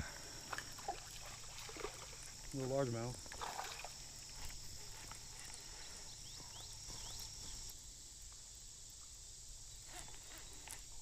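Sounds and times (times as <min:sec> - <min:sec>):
high-pitched insect drone: 0:08.6 - 0:11.0.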